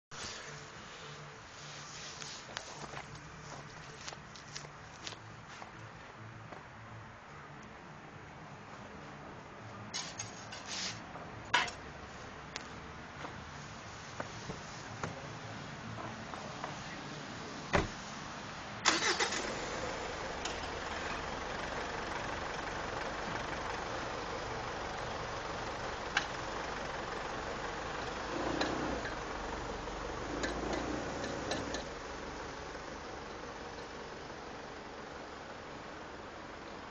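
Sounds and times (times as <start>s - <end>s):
car engine cranking and running: 18.8s - 35.5s.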